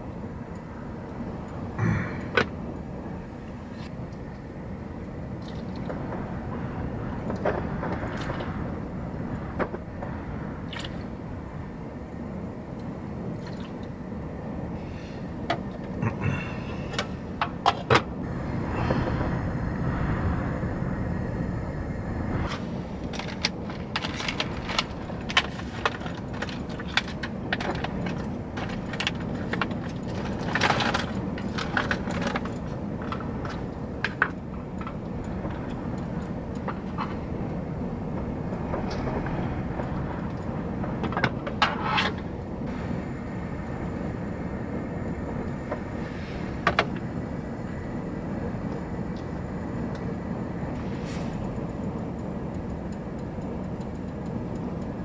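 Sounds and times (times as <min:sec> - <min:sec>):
steady low rumble: 0:00.0 - 0:17.5, 0:18.2 - 0:25.4, 0:42.5 - 0:55.0
hiss: 0:14.7 - 0:15.5, 0:18.2 - 0:23.0, 0:42.7 - 0:52.1.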